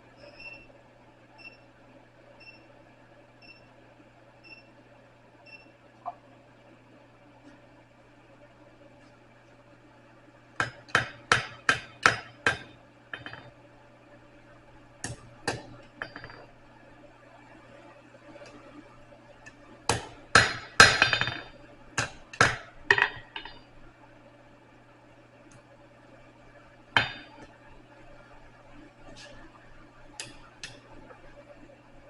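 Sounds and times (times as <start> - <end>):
hammer striking steel on anvil: 19.9 - 23.6, 27.0 - 27.4.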